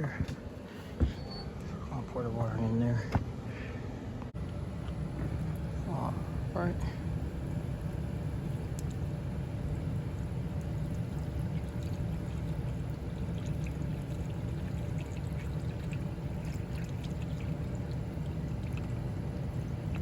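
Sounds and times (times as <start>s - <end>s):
water pouring into drain line: 7.8s - 20.0s.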